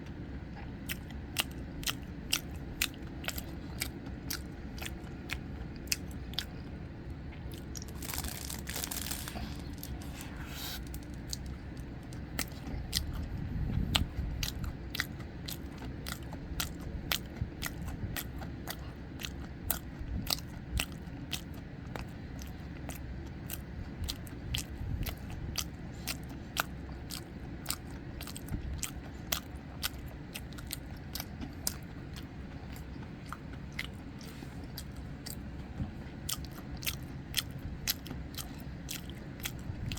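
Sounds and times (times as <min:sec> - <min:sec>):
chewing crunchy bread: 0:00.0 - 0:39.9.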